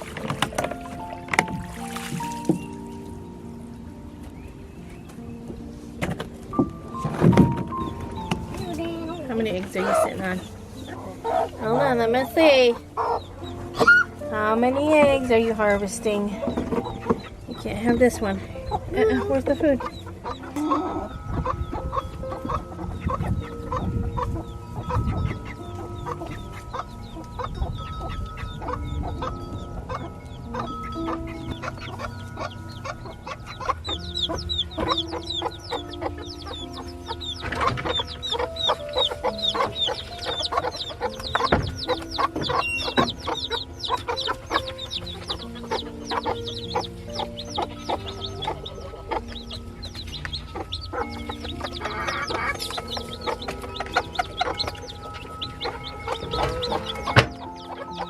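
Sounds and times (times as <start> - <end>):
background music of held notes: 0.0 - 58.0
chickens clucking: 0.0 - 58.0.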